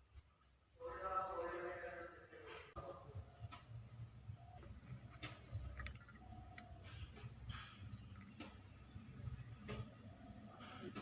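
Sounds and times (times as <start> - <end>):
insect chirping: 2.8 - 11.0.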